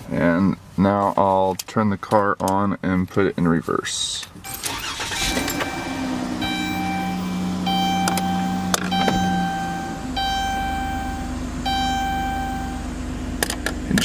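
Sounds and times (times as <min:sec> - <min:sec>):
running vehicle hum: 0:00.0 - 0:14.0
vehicle warning chime: 0:04.4 - 0:13.0.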